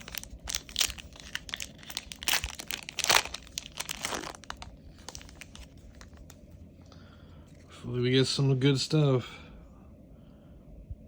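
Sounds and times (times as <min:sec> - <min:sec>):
foil pack crinkling: 0:00.0 - 0:06.4.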